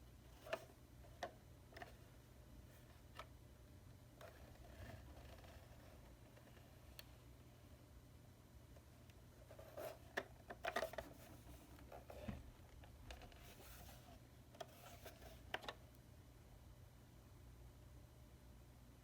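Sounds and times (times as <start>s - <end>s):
light clicks and scrapes: 13.1s - 15.8s.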